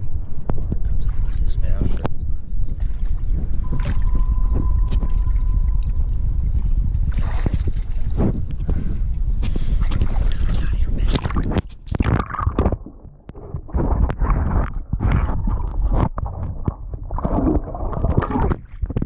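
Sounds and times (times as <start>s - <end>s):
wind buffeting microphone: 0.0s - 19.0s
water splashing and sloshing: 2.6s - 19.0s.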